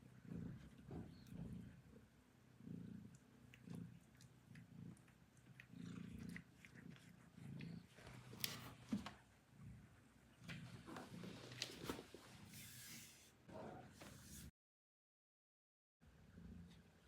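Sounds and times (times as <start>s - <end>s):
cat purring: 0.0s - 12.9s.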